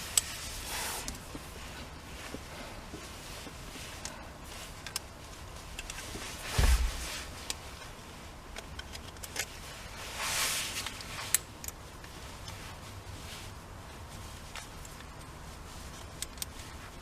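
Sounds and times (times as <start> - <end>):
scraping rustle: 0.0 - 17.0
heavy thump: 6.5 - 7.2.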